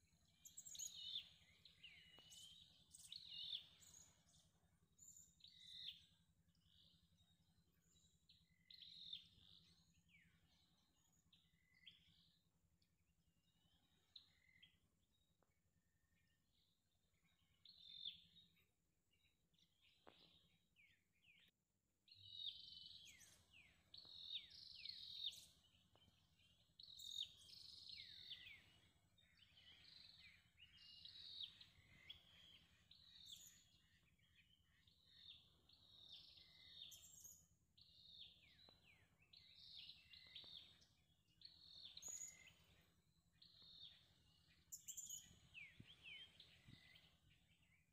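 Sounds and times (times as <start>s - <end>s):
birds chirping: 0.0s - 7.0s, 22.1s - 47.9s.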